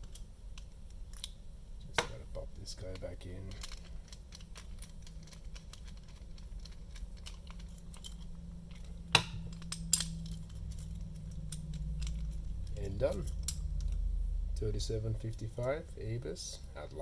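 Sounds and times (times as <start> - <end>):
padlock parts clicking: 0.0 - 1.4, 2.9 - 14.1
low steady hum: 0.0 - 17.0.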